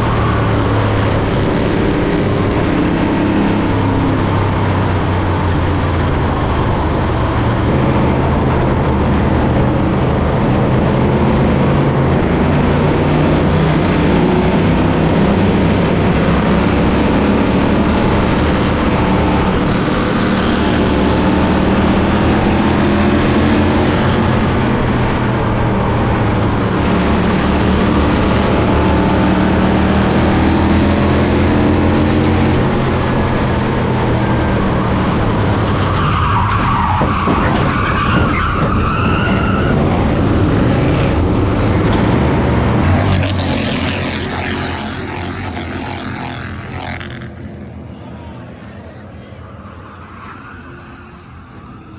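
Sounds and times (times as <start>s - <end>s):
race car engine running hard: 0.0s - 51.9s.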